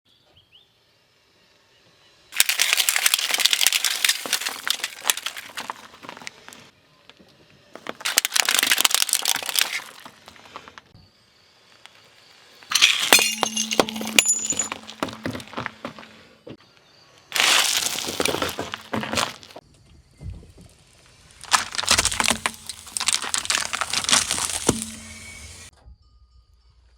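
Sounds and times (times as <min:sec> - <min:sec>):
tyre crushing brittle objects: 0:02.4 - 0:06.7, 0:07.8 - 0:10.8, 0:12.6 - 0:16.2, 0:17.4 - 0:19.6, 0:21.2 - 0:25.7.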